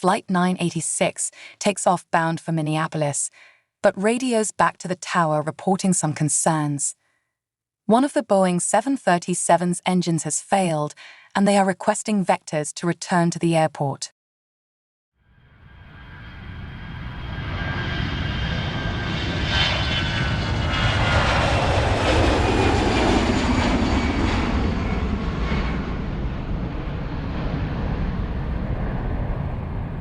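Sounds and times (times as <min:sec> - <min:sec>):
jet airliner flying past: 0:15.3 - 0:30.0.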